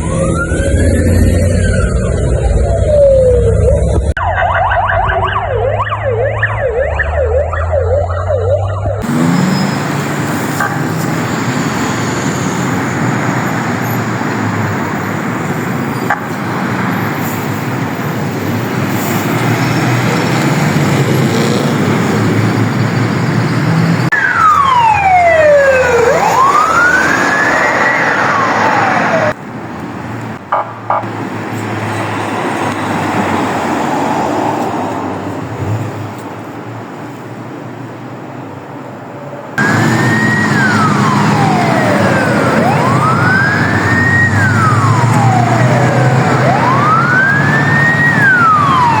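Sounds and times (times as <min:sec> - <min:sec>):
siren yelping: 0:00.0 - 0:10.0, 0:24.1 - 0:29.4, 0:39.6 - 0:49.0
siren wailing: 0:00.0 - 0:17.1, 0:22.0 - 0:29.4, 0:39.6 - 0:49.0
road and engine noise: 0:00.0 - 0:49.0.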